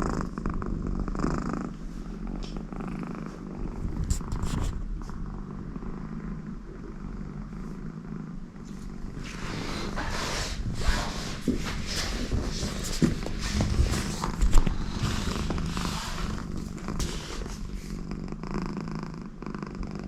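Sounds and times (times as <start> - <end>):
cat purring: 0.0 - 20.0
rustling and scraping: 1.8 - 5.2, 8.7 - 18.1.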